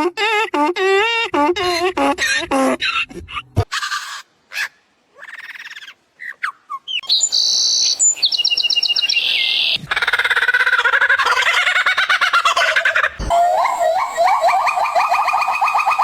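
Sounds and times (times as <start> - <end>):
birds chirping and whistling: 6.2 - 10.3
bird trill: 6.2 - 11.6, 12.4 - 16.0.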